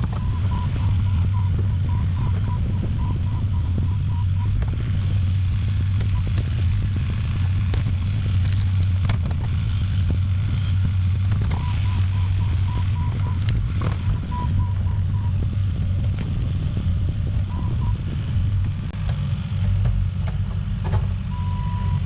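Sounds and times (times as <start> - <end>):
diesel engine droning: 0.0 - 22.0
reversing alarm beeping: 0.1 - 4.6, 11.6 - 15.4, 17.5 - 18.0, 21.3 - 22.0
knocks and clicks: 11.2 - 14.8.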